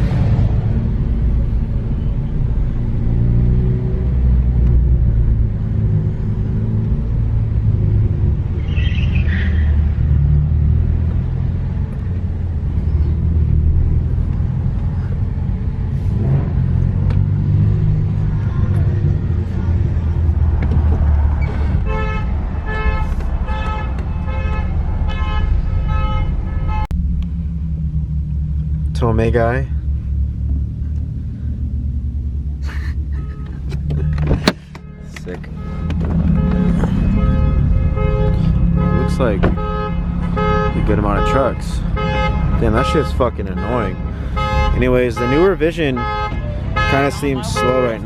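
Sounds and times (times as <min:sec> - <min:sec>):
engine idling: 0:18.1 - 0:48.0
vehicle horn short honks: 0:21.6 - 0:26.9, 0:34.6 - 0:48.0
vehicle engine running low revs: 0:26.9 - 0:39.6.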